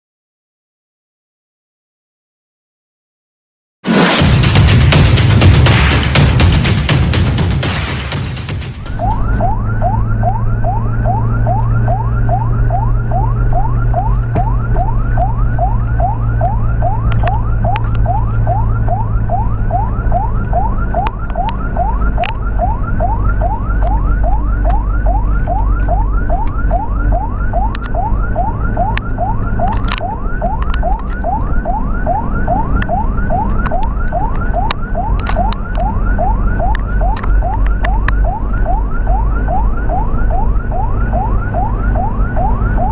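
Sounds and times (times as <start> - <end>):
low vehicle rumble: 8.1 - 42.9
ambulance siren yelping: 8.8 - 42.9.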